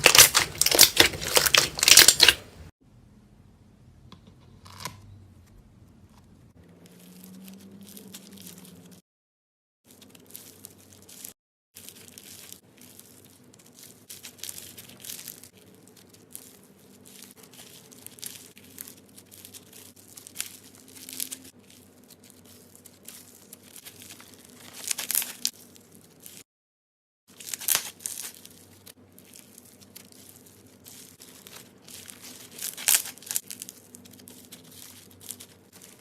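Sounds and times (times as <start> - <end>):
slime squished by hand: 0.0 - 2.6.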